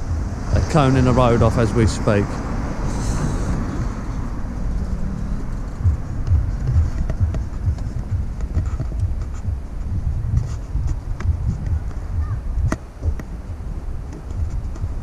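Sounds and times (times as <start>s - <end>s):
steady low rumble: 0.0s - 15.0s
soft low thuds: 3.6s - 15.0s.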